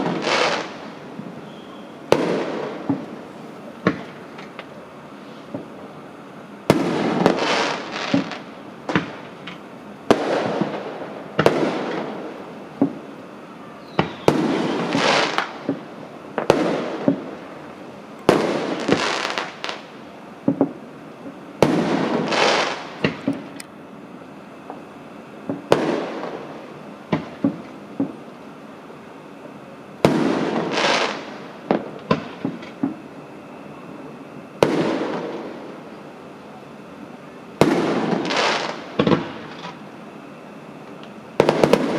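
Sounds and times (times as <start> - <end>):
fireworks bangs: 0.0 - 4.6, 6.7 - 9.4, 13.9 - 17.6, 18.3 - 23.5, 30.0 - 33.0, 34.6 - 35.8, 37.6 - 39.8, 41.4 - 41.9
crackling hiss: 0.0 - 41.9
fireworks pops: 2.1 - 3.2, 3.8 - 5.8, 6.7 - 10.8, 12.8 - 13.0, 13.9 - 17.3, 18.3 - 23.7, 25.4 - 26.4, 27.1 - 28.2, 30.1 - 33.0.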